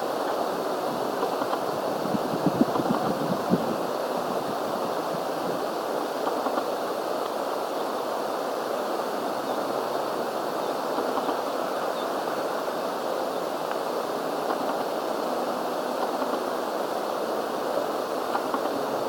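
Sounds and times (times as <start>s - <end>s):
wind buffeting microphone: 0.8s - 5.8s.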